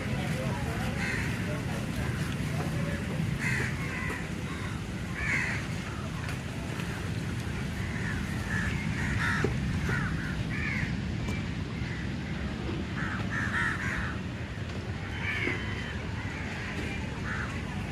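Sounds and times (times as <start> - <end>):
birds calling: 2.1 - 6.1.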